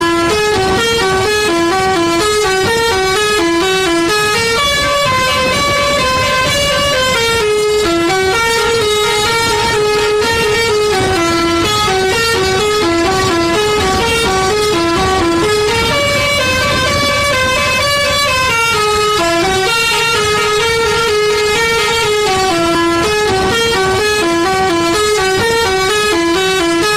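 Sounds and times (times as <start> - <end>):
multi-note bus air horn melody: 0.0 - 26.9.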